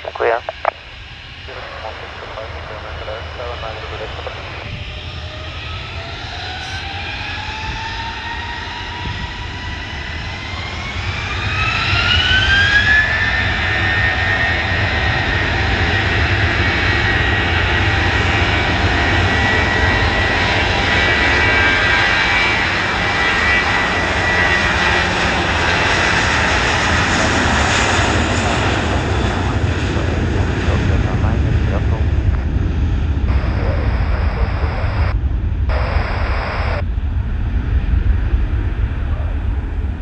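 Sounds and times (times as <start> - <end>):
jet engines spooling up: 33.2 - 36.8.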